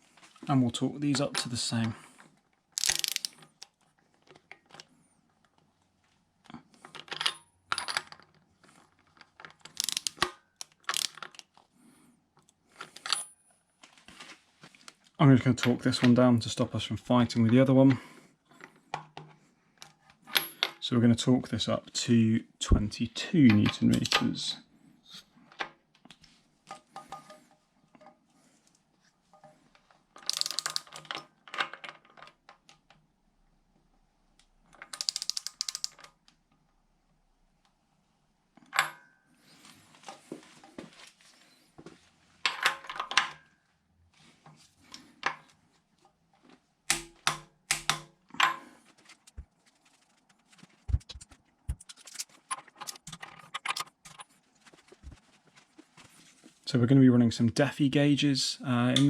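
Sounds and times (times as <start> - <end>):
ratchet clicking: 2.8 - 3.4, 9.8 - 10.2, 10.8 - 11.2, 30.3 - 30.9, 35.0 - 36.0.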